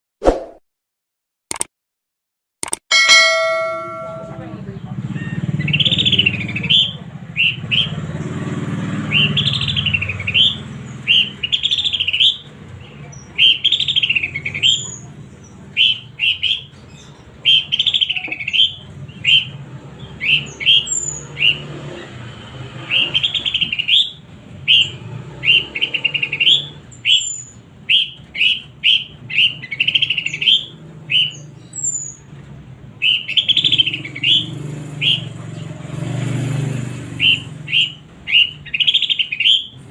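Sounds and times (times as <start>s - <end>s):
bird calling in rapid bursts: 5.2s - 8.1s, 8.9s - 12.5s, 13.2s - 15.1s, 15.7s - 21.7s, 22.8s - 32.3s, 33.0s - 35.6s, 37.1s - 39.9s.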